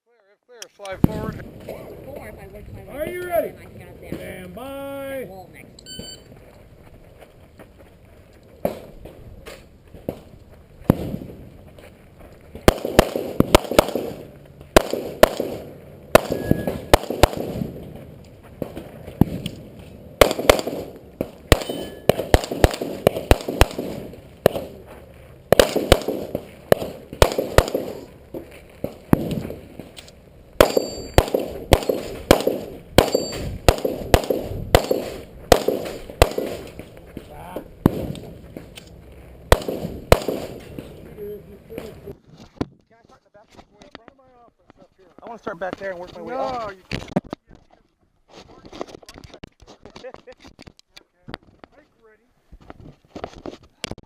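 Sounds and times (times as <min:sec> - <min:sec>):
gunshots: 0:08.6 - 0:11.4, 0:12.6 - 0:38.7, 0:39.4 - 0:42.1
bullet clanging on steel plate: 0:21.6 - 0:22.1, 0:30.7 - 0:31.2, 0:33.1 - 0:33.5.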